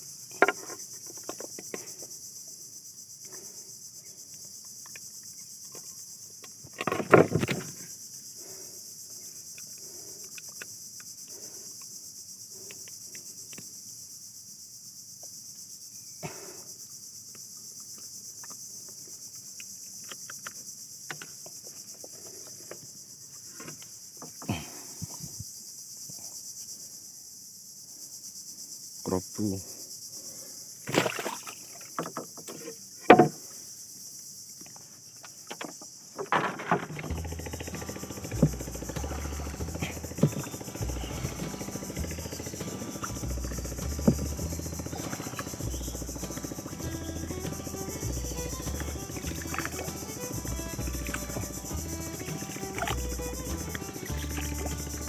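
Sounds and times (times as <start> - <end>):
insects chirping: 0.0 - 55.0.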